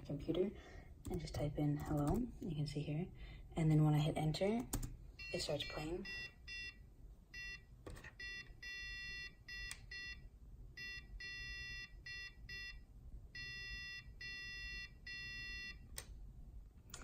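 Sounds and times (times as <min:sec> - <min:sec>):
morse code beeps: 0:05.2 - 0:06.8, 0:07.4 - 0:07.6, 0:08.2 - 0:10.2, 0:10.8 - 0:12.8, 0:13.4 - 0:15.8.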